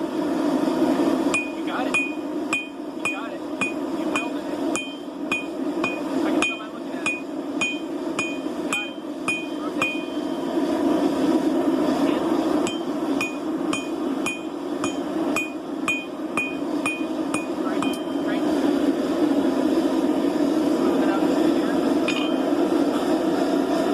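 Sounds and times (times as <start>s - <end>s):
steady rushing noise: 0.0s - 23.9s
hammer ringing on anvil: 1.4s - 10.4s, 12.7s - 18.3s, 22.1s - 22.4s.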